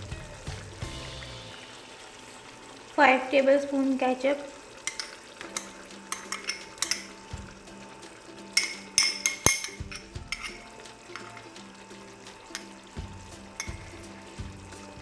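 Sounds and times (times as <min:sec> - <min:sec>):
metal spoon scraping a pan: 0:04.8 - 0:15.0.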